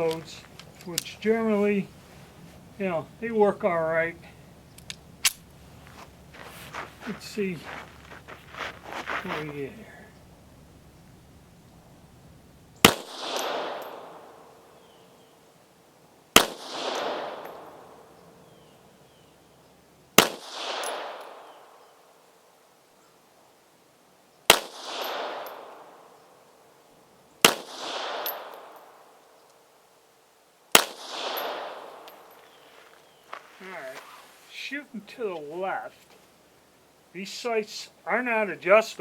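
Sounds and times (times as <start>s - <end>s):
pistol shots with rolling echo: 12.8s - 14.8s, 16.3s - 18.4s, 20.2s - 21.8s, 24.5s - 26.2s, 27.4s - 29.2s, 30.7s - 32.6s.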